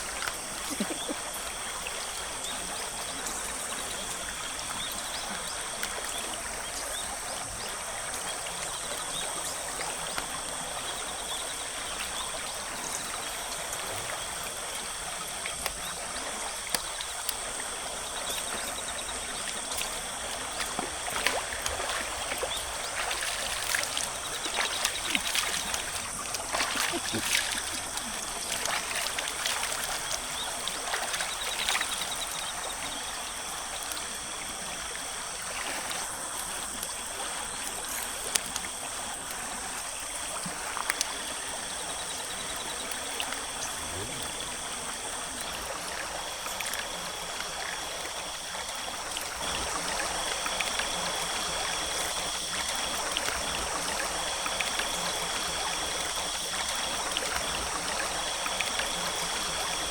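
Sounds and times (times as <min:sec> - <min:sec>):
stream flowing over stones: 0:00.0 - 0:59.9.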